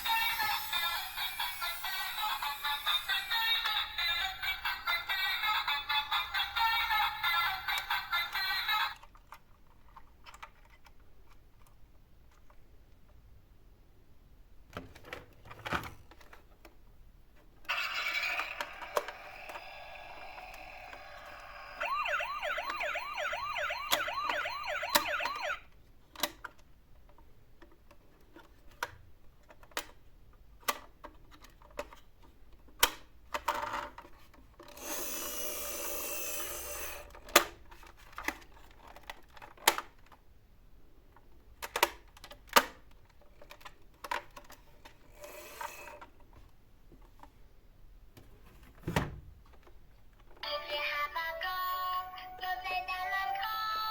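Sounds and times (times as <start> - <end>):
toy warbling siren: 0.0 - 4.0, 17.7 - 25.7.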